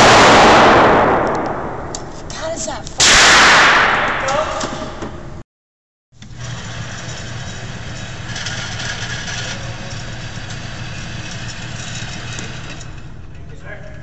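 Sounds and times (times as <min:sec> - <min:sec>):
low mechanical hum: 0:06.2 - 0:14.0.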